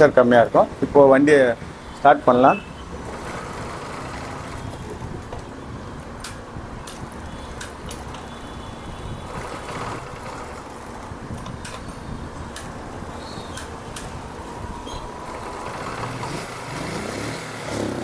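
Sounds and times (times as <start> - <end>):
light engine clicks: 9.4 - 16.7.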